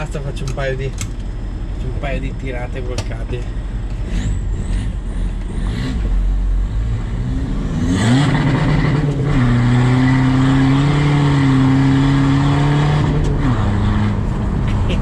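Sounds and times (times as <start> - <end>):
van engine accelerating hard: 3.3 - 15.0.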